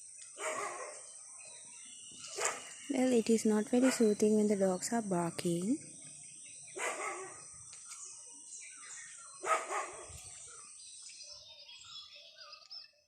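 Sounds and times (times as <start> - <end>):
dogs barking: 0.4 - 1.1, 2.3 - 2.8, 3.8 - 4.1, 6.7 - 7.4, 9.4 - 10.2.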